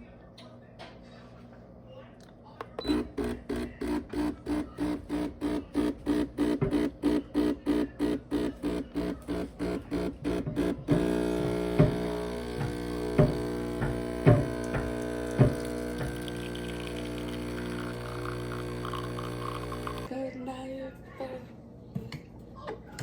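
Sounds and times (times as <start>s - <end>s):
espresso machine pump buzzing: 2.8s - 20.1s.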